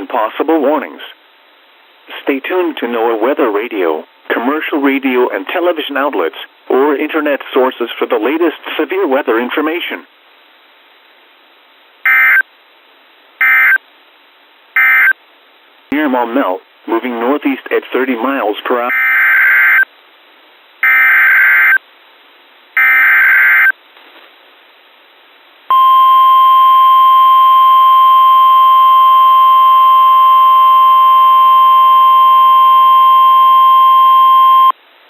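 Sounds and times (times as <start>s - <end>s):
steady warning alarm tone: 25.7s - 34.7s.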